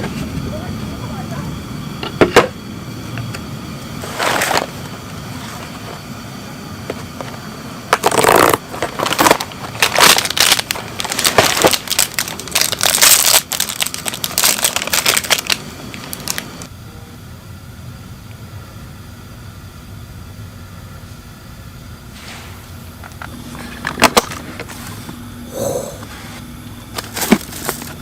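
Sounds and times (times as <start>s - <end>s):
crunching and crinkling handling noise: 4.0s - 6.1s, 6.8s - 16.7s, 26.0s - 28.0s.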